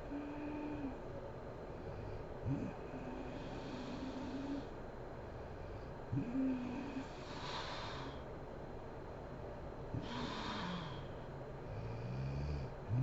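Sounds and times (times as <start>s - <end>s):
woman snoring: 2.5s - 4.7s, 6.1s - 8.2s, 10.0s - 11.2s, 11.8s - 13.0s.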